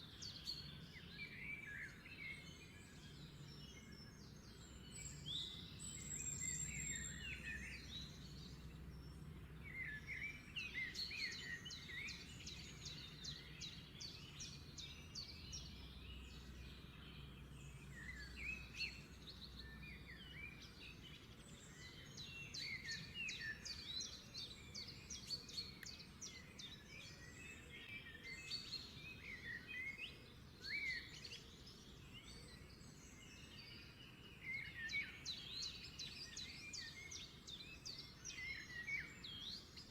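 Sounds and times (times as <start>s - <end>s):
birds chirping and singing: 0.0s - 39.9s.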